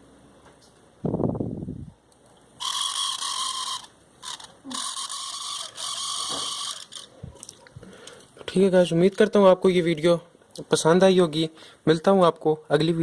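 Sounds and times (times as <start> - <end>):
small electric motor whirring: 2.6 - 7.1.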